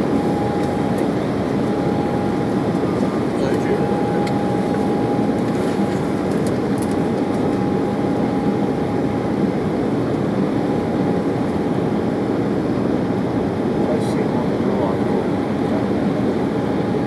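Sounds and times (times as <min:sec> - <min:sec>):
faint steady whine: 0:00.0 - 0:11.3
airliner cabin engine rush: 0:00.0 - 0:17.0.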